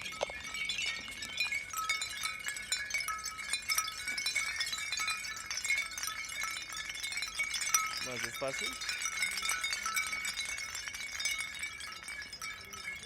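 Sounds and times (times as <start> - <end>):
glassy tinkling chimes: 0.0 - 13.0.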